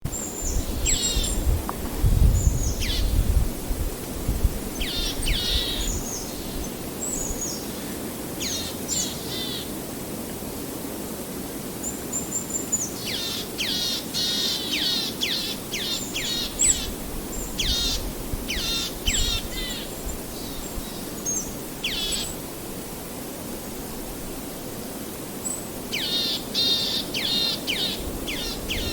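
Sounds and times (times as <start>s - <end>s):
wind and leaves hiss: 0.0s - 28.9s
forest birds chirping: 0.1s - 1.5s, 2.3s - 3.2s, 4.7s - 9.7s, 11.8s - 22.4s, 25.4s - 28.9s
wind gust rumbling: 0.3s - 7.4s.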